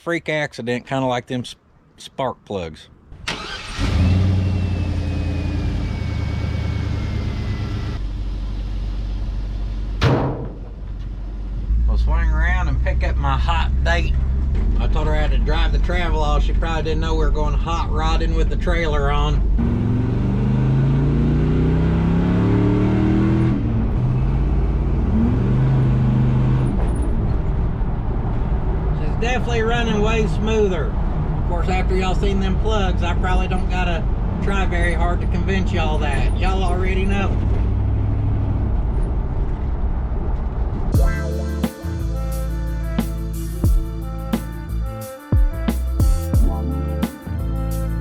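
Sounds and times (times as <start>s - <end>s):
engine running: 3.2s - 16.6s, 41.0s - 48.0s
engine accelerating: 3.3s - 10.0s, 19.4s - 28.9s, 36.4s - 48.0s
sharp knock: 10.0s - 10.8s.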